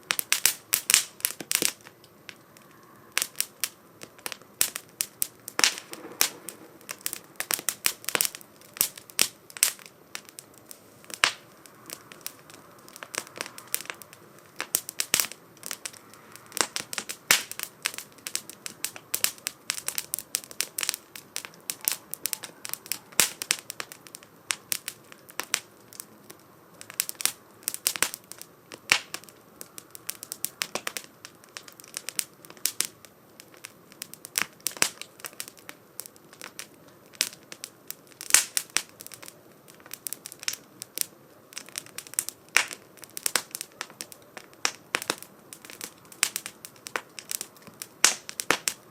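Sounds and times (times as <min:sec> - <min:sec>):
faint hiss: 0:00.0 - 0:48.9
firewood crackling and popping: 0:00.0 - 0:48.9.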